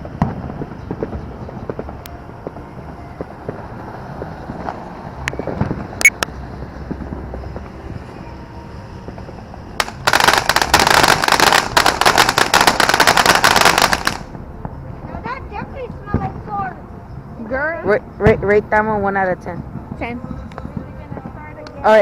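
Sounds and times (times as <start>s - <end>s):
firework crackling pops: 0.0s - 7.8s, 9.0s - 14.8s.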